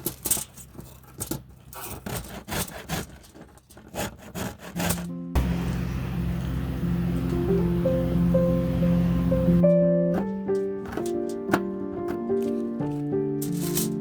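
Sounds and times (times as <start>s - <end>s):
knife cutting on wooden board: 1.8s - 5.1s
background music: 4.9s - 14.0s.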